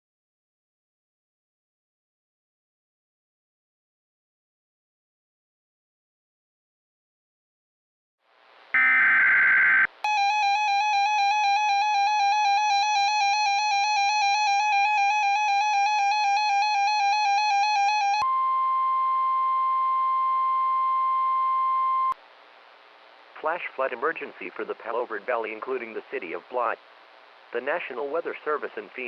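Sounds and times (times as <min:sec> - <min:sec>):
harsh pulsing alert tone: 0:08.8 - 0:11.3
steady warning tone: 0:08.8 - 0:22.2.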